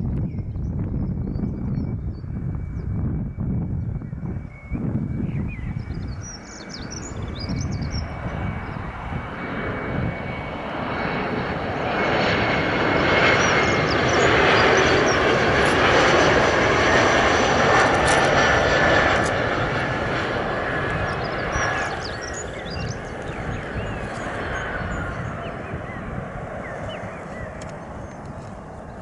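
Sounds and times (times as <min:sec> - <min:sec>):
jet plane approaching: 0:00.0 - 0:29.0
high jet whine: 0:00.1 - 0:29.0.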